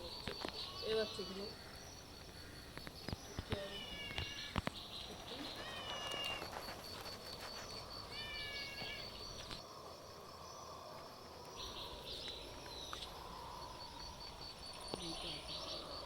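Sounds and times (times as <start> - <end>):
outdoor background noise: 0.0 - 16.0
cat meowing: 3.6 - 4.6, 5.4 - 6.5, 8.1 - 9.1.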